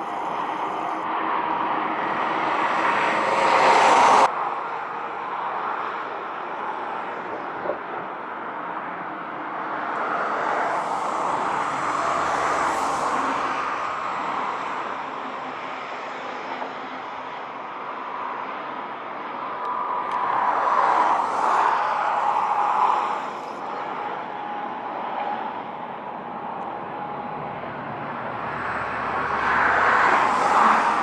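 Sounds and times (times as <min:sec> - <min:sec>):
distant vehicle noise: 0:09.3 - 0:31.0.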